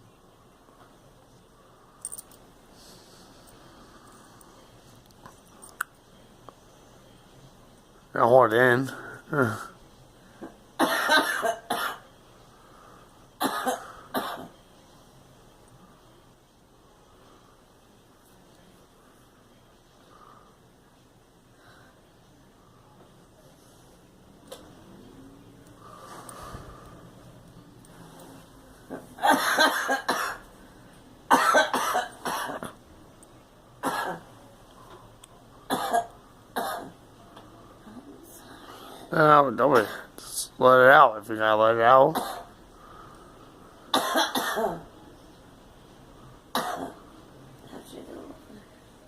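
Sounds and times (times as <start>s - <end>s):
girl coughing: 10.8s - 12.0s, 13.4s - 14.5s, 29.2s - 30.4s, 31.3s - 32.8s, 33.8s - 34.2s, 35.7s - 36.9s, 43.9s - 44.8s, 46.5s - 47.0s.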